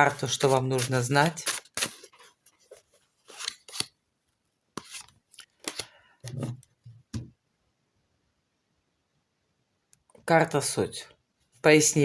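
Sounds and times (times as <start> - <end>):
cards rustling and slapping: 0.2 - 4.0, 4.7 - 6.7.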